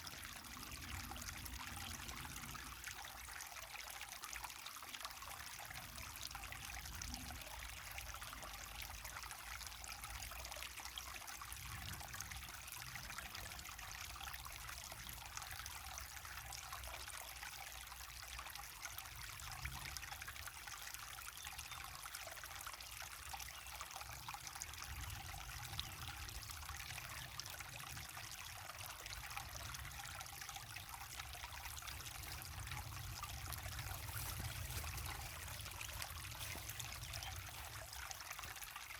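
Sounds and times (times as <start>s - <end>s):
low water rumble: 24.7s - 38.8s.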